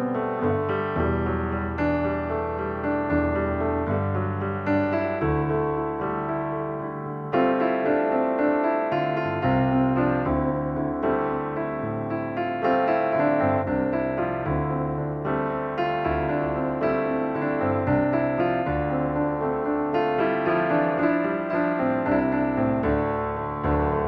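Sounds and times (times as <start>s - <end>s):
piano chords: 0.0s - 24.0s.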